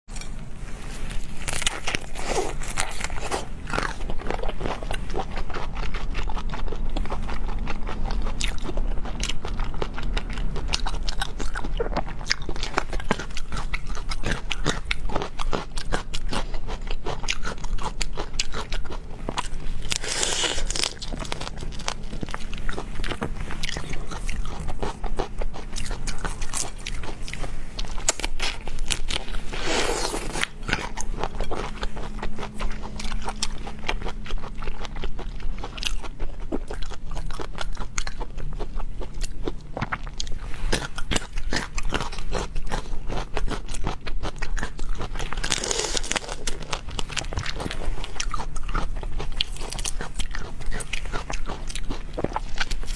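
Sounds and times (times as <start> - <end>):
wet crunchy chewing: 1.0 - 52.9
loud crunches: 25.7 - 34.1.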